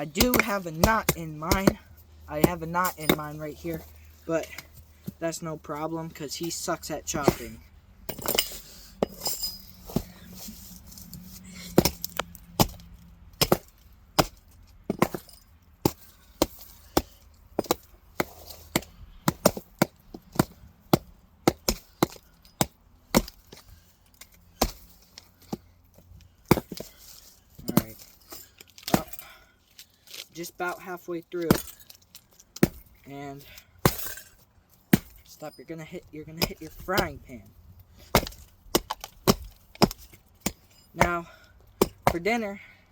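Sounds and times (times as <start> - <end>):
axe chopping logs: 0.0 - 5.2, 6.6 - 9.1, 11.6 - 25.6, 26.4 - 29.4, 31.4 - 31.8, 32.5 - 35.4, 36.3 - 37.4, 38.0 - 42.6.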